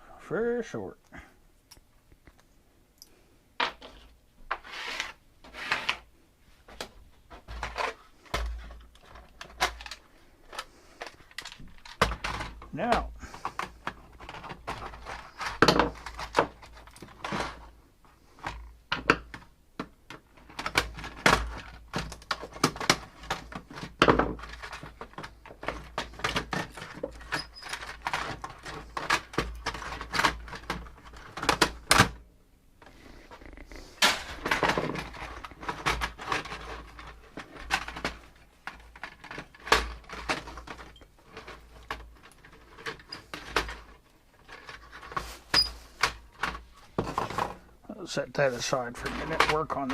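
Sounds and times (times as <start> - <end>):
small parts clicking and rattling: 7.4 - 17.8, 18.4 - 32.2, 34.3 - 47.6.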